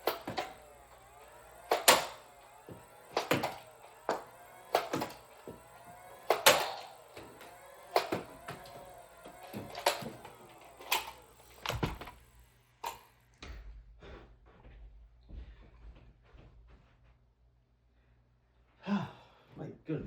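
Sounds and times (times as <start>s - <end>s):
toy blaster firing clacks: 0.0s - 13.1s.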